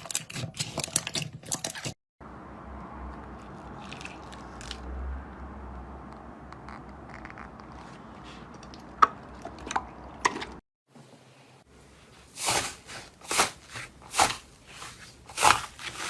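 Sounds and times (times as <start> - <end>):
slime squishing by hand: 12.2 - 16.0.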